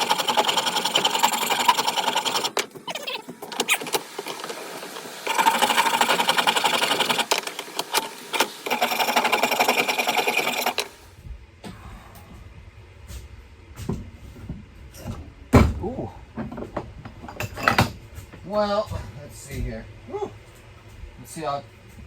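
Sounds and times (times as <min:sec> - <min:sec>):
power tool sanding wood: 0:00.0 - 0:02.6, 0:03.7 - 0:11.0.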